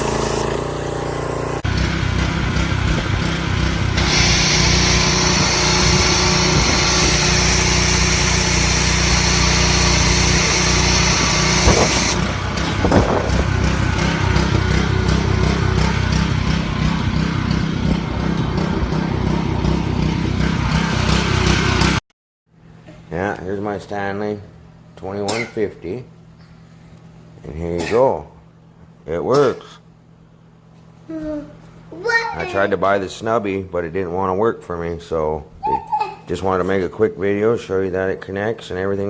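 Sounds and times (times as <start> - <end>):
pressure washer pulsing: 0.0 - 22.0
water spray hissing: 4.0 - 13.4.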